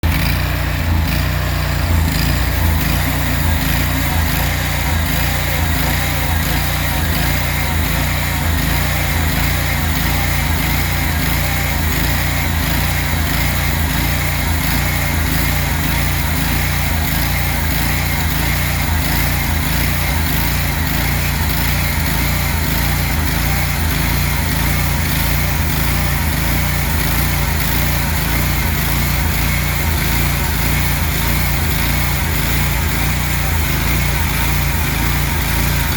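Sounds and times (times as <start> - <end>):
sawmill blade sawing log: 0.0 - 35.9.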